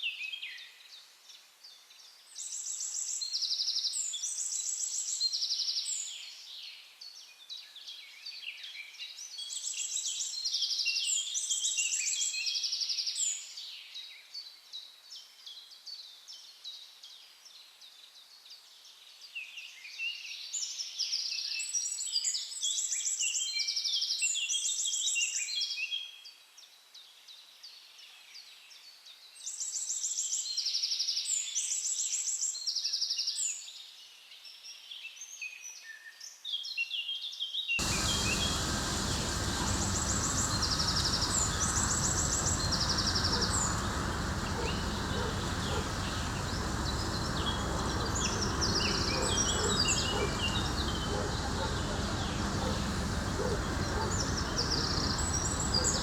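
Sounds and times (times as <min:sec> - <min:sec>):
songbirds chirping and trilling: 0:37.8 - 0:56.0
steady rushing noise: 0:37.8 - 0:56.0.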